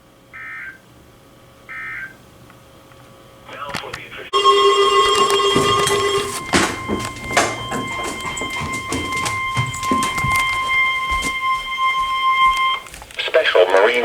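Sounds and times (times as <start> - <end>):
high steady alarm beep: 1.7 - 2.2, 4.3 - 14.0
radio static crackles: 3.5 - 4.4, 12.5 - 14.0
lower alarm tone: 4.3 - 14.0.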